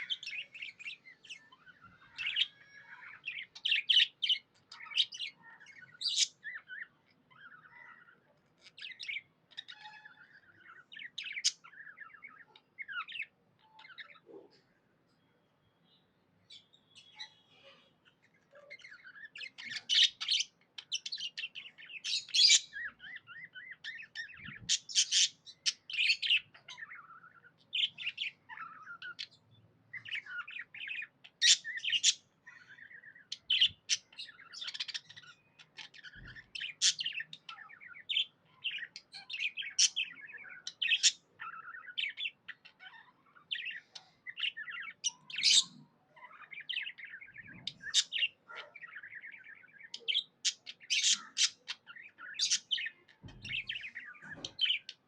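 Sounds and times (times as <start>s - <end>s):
budgerigar chattering and chirping: 17.1s - 55.0s.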